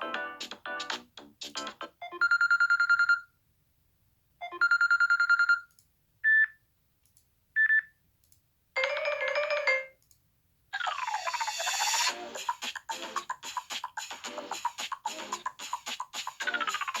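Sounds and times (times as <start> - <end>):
melodic ringtone: 8.8 - 10.0.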